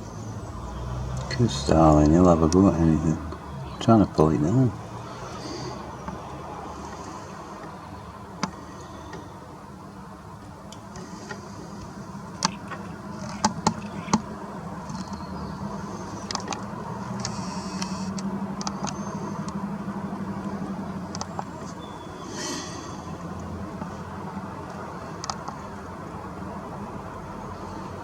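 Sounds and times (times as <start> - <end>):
steady low hum: 0.0 - 28.0
bird chirps: 14.9 - 16.3, 21.3 - 22.3
sharp clicks: 16.2 - 19.6, 21.1 - 21.6.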